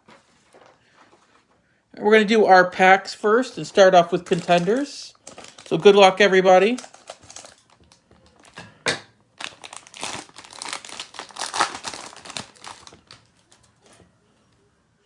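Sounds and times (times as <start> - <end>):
wrapper crinkling: 3.6 - 8.6, 9.4 - 13.9
wrapper ripping: 4.1 - 8.6, 9.4 - 13.8.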